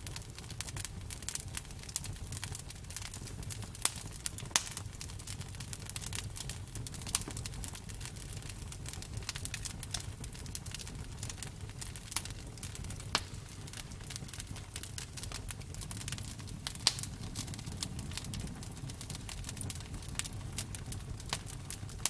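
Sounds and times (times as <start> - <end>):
wood crackling and popping in fire: 0.0 - 22.0
low steady rumble: 11.1 - 22.0.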